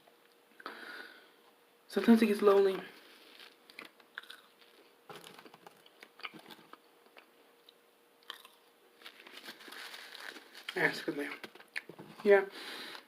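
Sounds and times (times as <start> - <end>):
food crunches and mouth clicks: 3.3 - 9.5
chewing food: 3.4 - 8.7.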